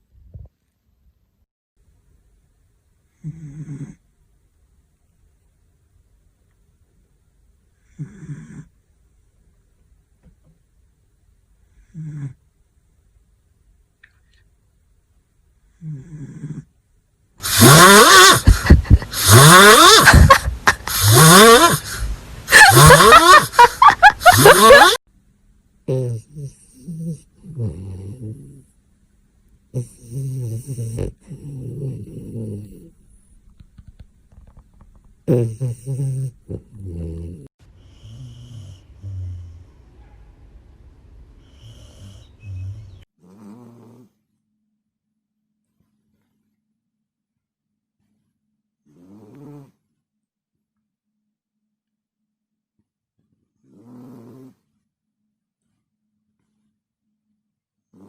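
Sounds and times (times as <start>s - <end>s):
dog snoring loudly: 3.2s - 4.0s, 7.8s - 8.8s, 11.8s - 12.4s, 15.7s - 16.7s, 17.4s - 22.0s, 22.6s - 23.6s, 24.3s - 25.0s, 25.9s - 28.7s, 29.7s - 32.9s, 35.2s - 39.6s, 41.4s - 44.2s, 48.8s - 49.9s, 53.6s - 54.7s.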